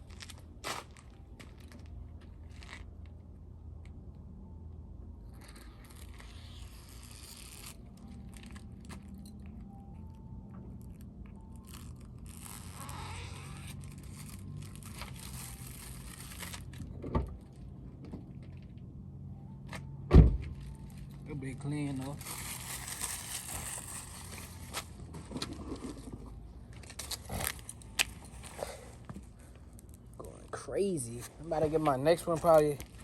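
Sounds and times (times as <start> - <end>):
plastic scraping and crinkling: 10.8 - 17.0, 21.9 - 28.9.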